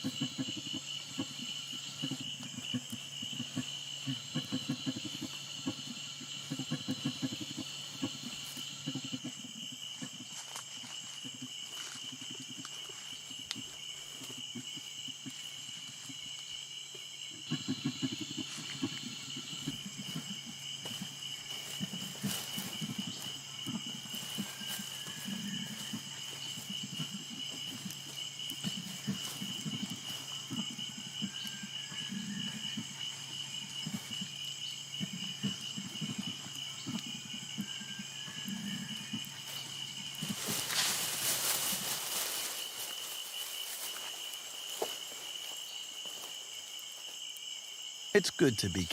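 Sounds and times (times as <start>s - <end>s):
bird calls: 0.0s - 46.4s
high insect drone: 0.0s - 48.9s.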